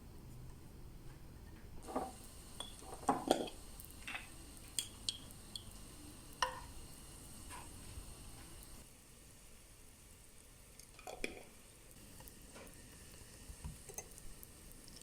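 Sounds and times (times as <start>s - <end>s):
utensils clinking against cookware: 1.8s - 5.8s.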